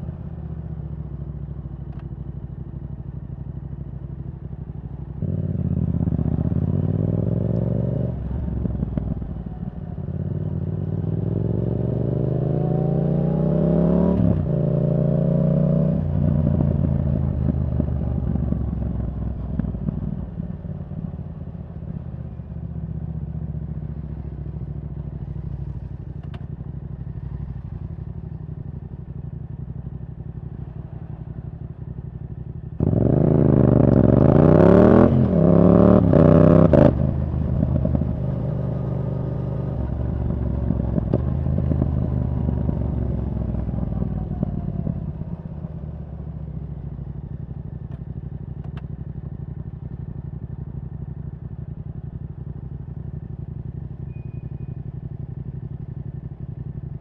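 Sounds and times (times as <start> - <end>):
motorcycle engine revving: 5.1 - 57.0.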